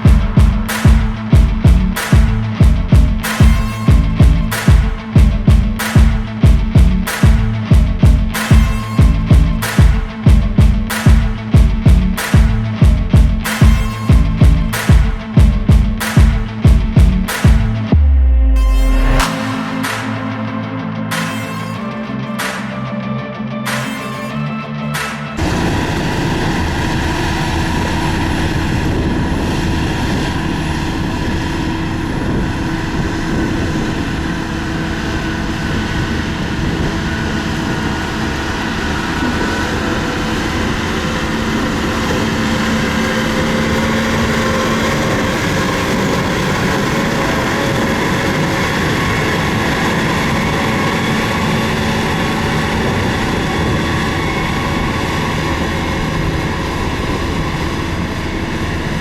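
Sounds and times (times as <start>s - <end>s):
diesel engine droning: 24.2s - 59.0s.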